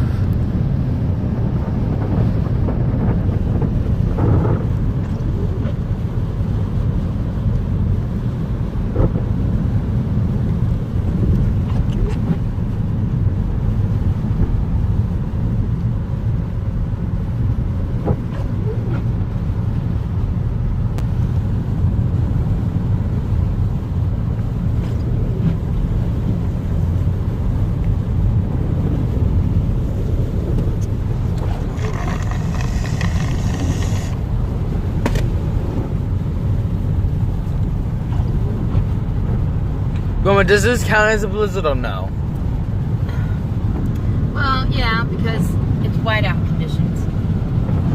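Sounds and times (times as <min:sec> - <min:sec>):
car cabin road rumble: 0:00.0 - 0:47.9
faint clicks: 0:30.6 - 0:34.2.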